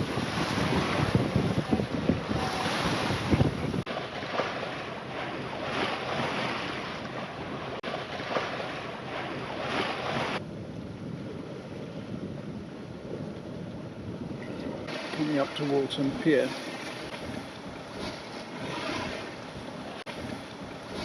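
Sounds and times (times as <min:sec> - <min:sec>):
wind on microphone: 0:00.0 - 0:03.9, 0:08.6 - 0:21.0
water washing along hull: 0:00.0 - 0:21.0.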